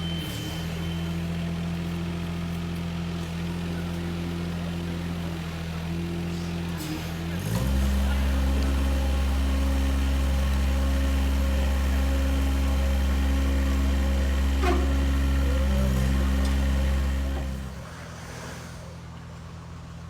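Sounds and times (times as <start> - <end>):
engine running steadily: 0.0 - 20.0.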